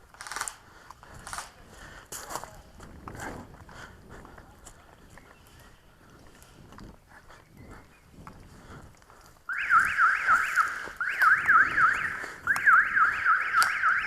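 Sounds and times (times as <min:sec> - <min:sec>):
electronic alarm siren warbling: 0:09.5 - 0:14.0.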